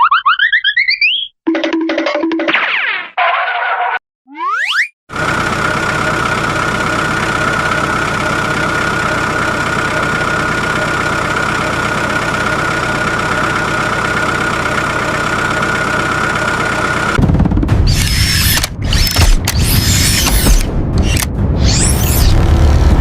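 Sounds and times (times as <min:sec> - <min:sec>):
engine idling low rumble: 0:05.1 - 0:23.0
high whine: 0:05.2 - 0:23.0.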